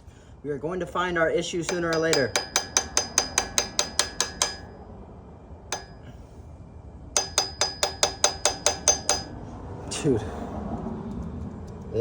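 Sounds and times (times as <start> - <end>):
hammer tapping on metal: 1.6 - 4.7, 5.7 - 6.1, 7.2 - 9.4.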